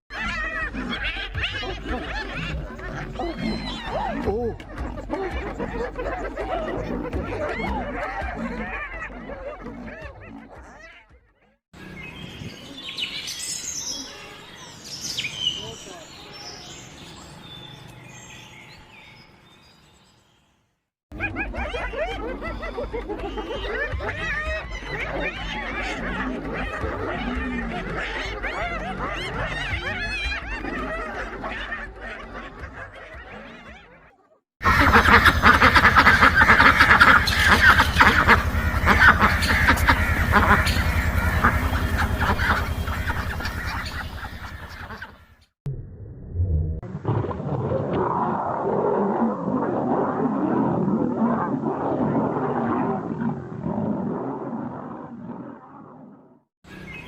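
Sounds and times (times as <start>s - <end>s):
chorus of small birds chirping: 0.1s - 11.0s, 11.8s - 20.4s, 21.3s - 34.0s, 34.6s - 45.5s, 56.7s - 57.0s
waterfowl flock calling: 34.6s - 45.4s
scattered bird chirps: 34.7s - 45.5s.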